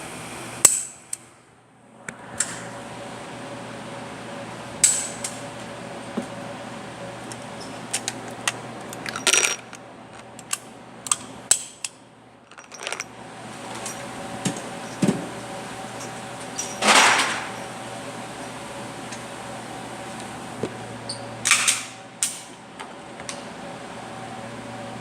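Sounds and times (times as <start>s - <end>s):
small metal objects clinking: 8.9s - 10.3s, 12.5s - 13.1s.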